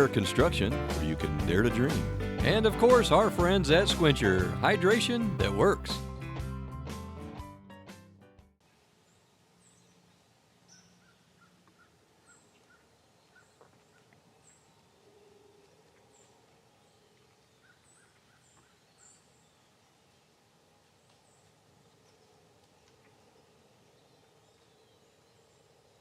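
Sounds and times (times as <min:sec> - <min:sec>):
quiet hiss: 0:08.6 - 0:26.0.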